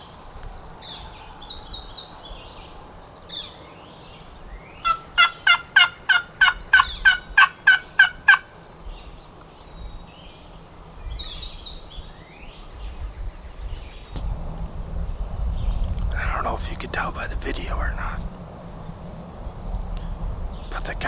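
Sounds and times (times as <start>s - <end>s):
faint songbird chirps: 0.0s - 5.5s, 8.6s - 14.2s
turkey yelps: 4.8s - 8.5s.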